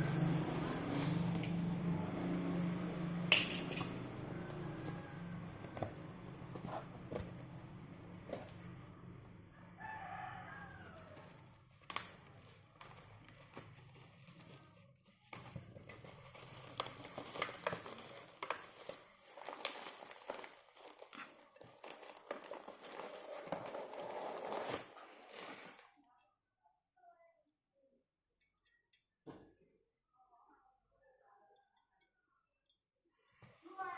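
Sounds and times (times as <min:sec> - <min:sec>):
rooster crowing: 0:03.8 - 0:06.6, 0:09.5 - 0:11.6
package being handled: 0:09.8 - 0:25.9.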